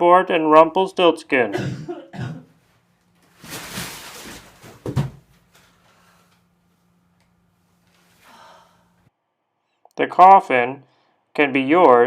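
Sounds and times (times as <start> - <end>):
faint steady hum: 0.0 - 12.0
person coughing: 1.4 - 2.6.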